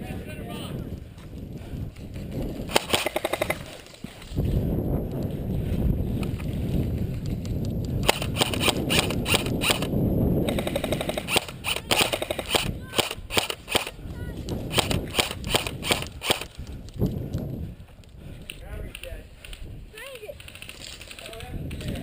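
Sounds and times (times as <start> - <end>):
airsoft gun bursts: 2.7 - 3.8, 8.0 - 9.9, 10.5 - 14.0, 14.7 - 16.5.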